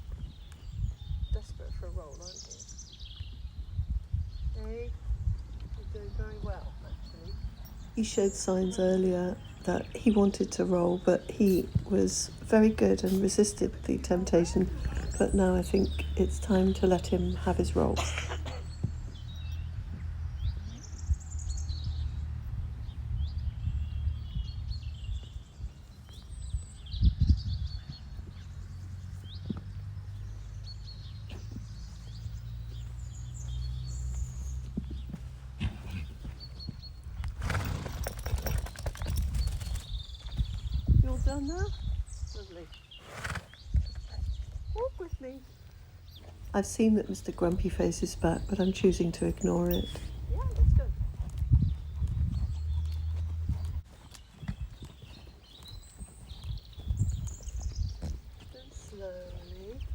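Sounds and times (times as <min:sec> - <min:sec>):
small birds chirping: 0:00.0 - 0:59.9
horse hooves walking: 0:04.5 - 0:23.1, 0:27.7 - 0:59.9
steady low rumble: 0:44.3 - 0:53.9.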